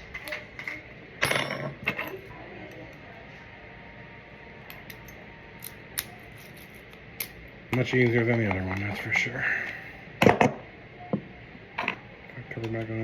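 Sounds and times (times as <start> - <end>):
metal lock parts clinking: 4.7 - 7.4.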